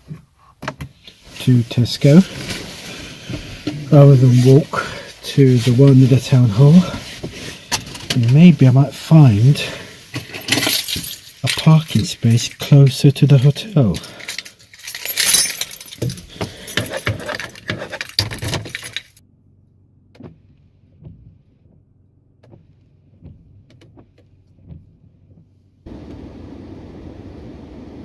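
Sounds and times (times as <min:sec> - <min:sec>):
keys jangling: 0:01.2 - 0:08.4, 0:09.4 - 0:19.2.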